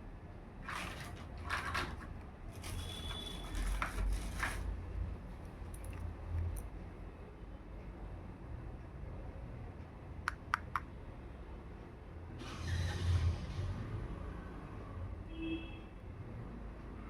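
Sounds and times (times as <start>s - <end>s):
plastic packaging crinkling: 0.7s - 4.7s.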